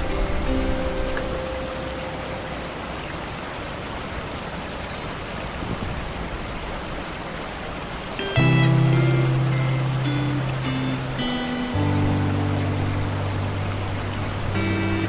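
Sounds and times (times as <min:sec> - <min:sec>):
rain falling on a lake: 0:00.0 - 0:15.0
background music note: 0:08.2 - 0:15.0.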